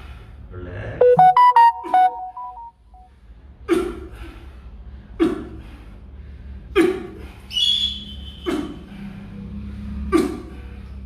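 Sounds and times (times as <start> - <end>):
high steady tone: 1.0 - 3.1.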